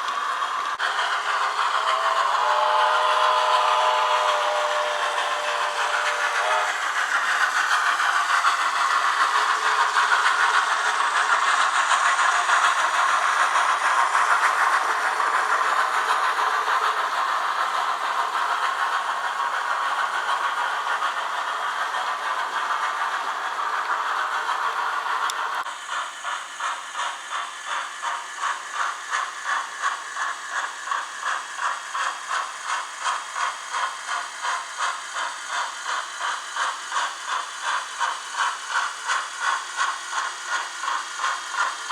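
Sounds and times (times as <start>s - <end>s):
rhythmic steam chuffing: 0.0s - 41.9s
steam hiss: 0.0s - 41.9s.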